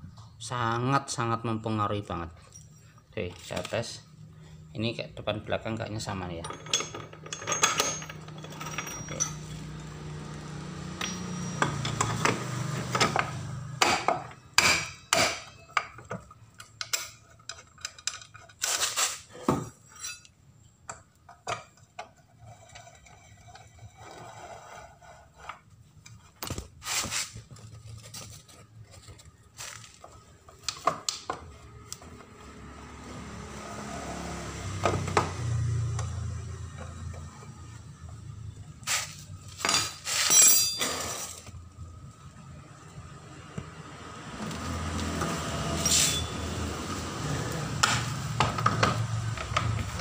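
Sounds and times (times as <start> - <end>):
metal parts clinking and clanking: 6.3 - 10.0, 11.0 - 13.3, 14.8 - 20.4, 38.9 - 41.6, 45.8 - 46.4.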